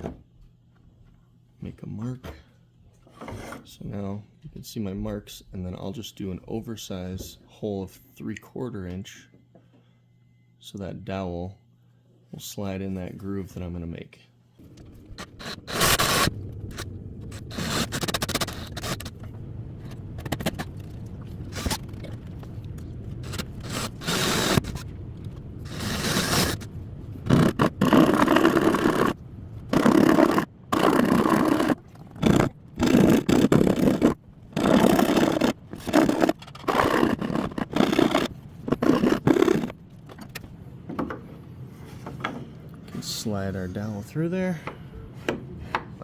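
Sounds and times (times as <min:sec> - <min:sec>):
hand tool scraping wood: 0:15.2 - 0:19.2, 0:19.9 - 0:24.9, 0:25.6 - 0:26.7, 0:27.3 - 0:39.8.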